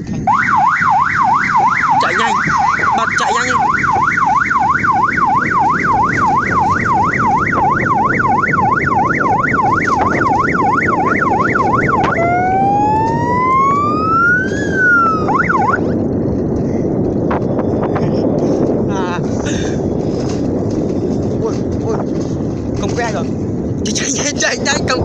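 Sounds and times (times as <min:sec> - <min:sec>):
electronic siren warbling and wailing: 0:00.2 - 0:16.0.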